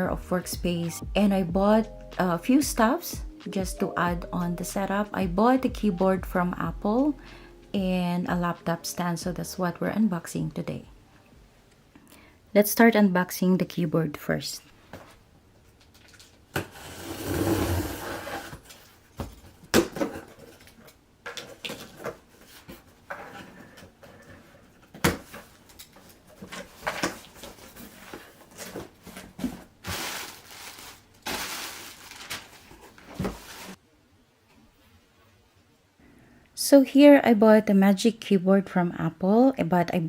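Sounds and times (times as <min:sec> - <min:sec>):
packaging rustling: 0:18.6 - 0:33.8.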